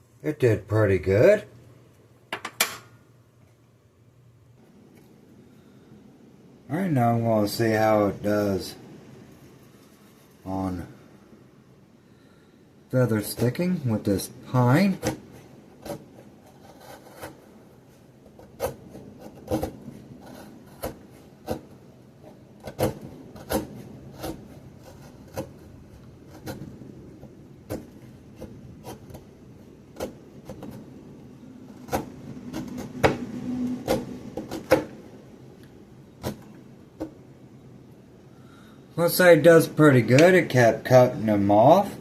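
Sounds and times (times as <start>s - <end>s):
knife scraping wood: 13.1s - 35.0s, 36.1s - 37.2s.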